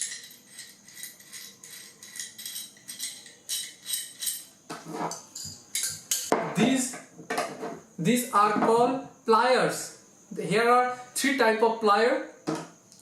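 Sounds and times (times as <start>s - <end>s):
steel tools clinking: 0.0s - 6.4s.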